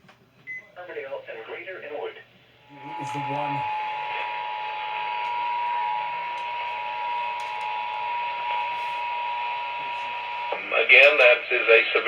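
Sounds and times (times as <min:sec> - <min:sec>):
radio hiss: 0:01.2 - 0:12.0
two-tone alarm: 0:02.6 - 0:11.3.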